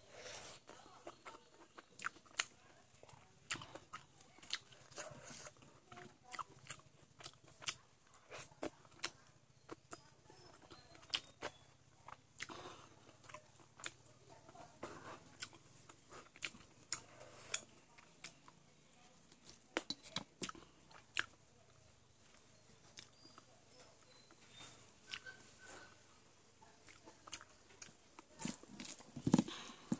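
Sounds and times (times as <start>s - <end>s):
chewing and biting: 1.0s - 18.5s, 24.0s - 25.6s, 26.6s - 29.9s.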